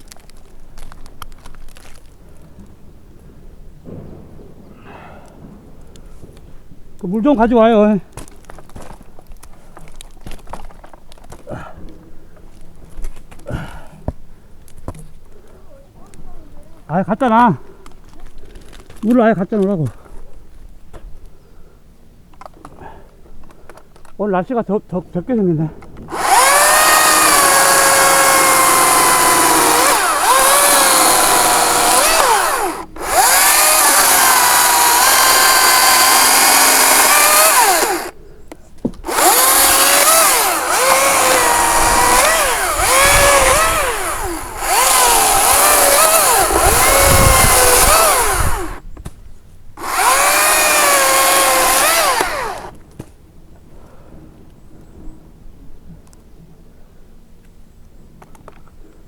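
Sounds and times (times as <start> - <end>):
chainsaw whining: 26.1 - 38.2, 39.0 - 48.8, 49.8 - 52.8.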